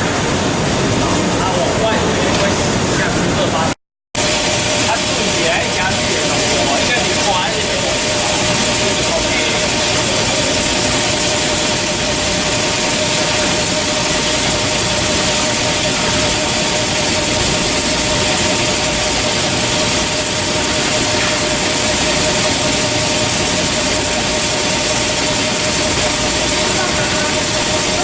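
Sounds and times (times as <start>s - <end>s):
spindle whine: 0.0s - 28.0s
milling machine cutting metal: 4.2s - 28.0s.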